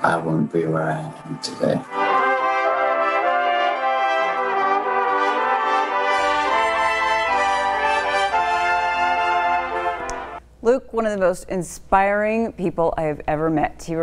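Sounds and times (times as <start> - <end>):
brass music with trumpet: 0.0 - 10.4.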